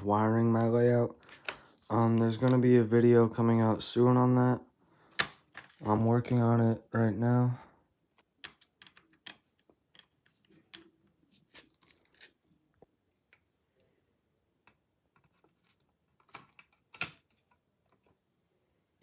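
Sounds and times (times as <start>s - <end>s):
plastic model cars clicking: 8.2s - 10.9s.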